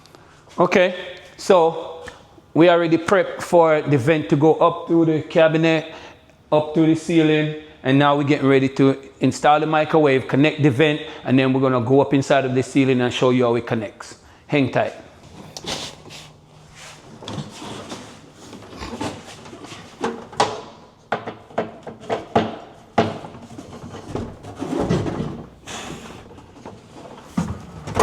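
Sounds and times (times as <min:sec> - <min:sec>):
scraping and shuffling: 0:14.8 - 0:20.4, 0:21.9 - 0:28.0.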